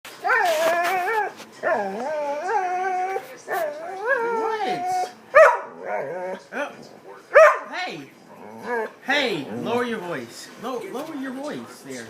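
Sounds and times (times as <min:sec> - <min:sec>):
dog whining and howling: 0:00.2 - 0:06.5, 0:08.4 - 0:09.0.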